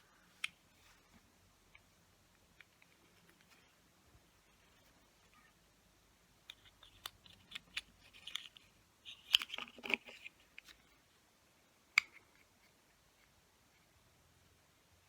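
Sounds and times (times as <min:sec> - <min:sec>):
plastic parts clicking and rattling: 0:06.5 - 0:10.8.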